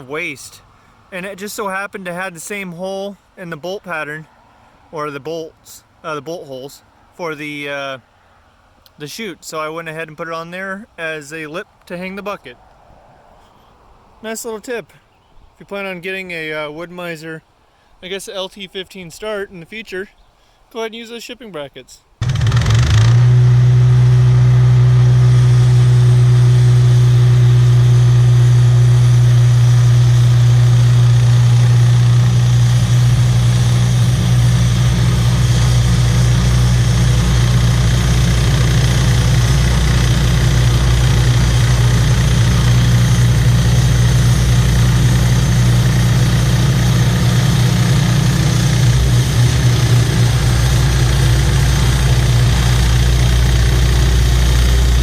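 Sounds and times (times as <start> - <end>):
sawmill engine hum: 0.0 - 1.7, 22.2 - 55.0
constant hiss: 0.0 - 55.0.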